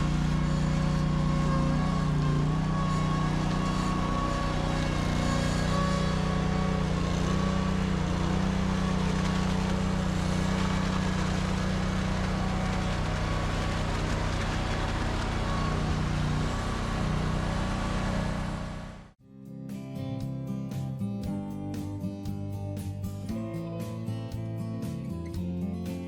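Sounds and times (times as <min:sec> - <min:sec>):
engine running steadily: 0:00.0 - 0:19.2.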